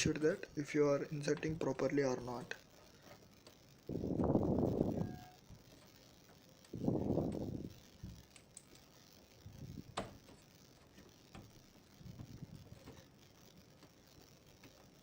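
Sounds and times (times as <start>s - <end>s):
computer parts clicking and knocking: 9.5s - 13.2s.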